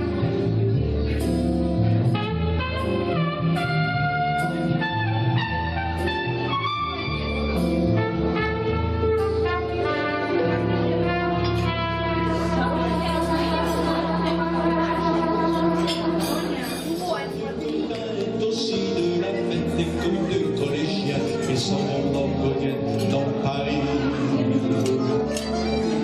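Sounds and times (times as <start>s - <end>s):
steady bass line: 0.0s - 26.0s
instrumental melody of held notes: 2.2s - 17.7s.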